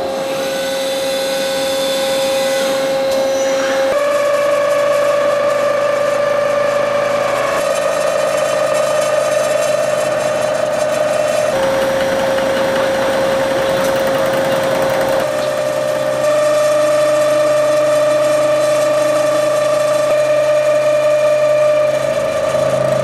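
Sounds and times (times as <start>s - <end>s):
machine whining: 0.0s - 23.0s
machine hissing: 11.1s - 15.3s.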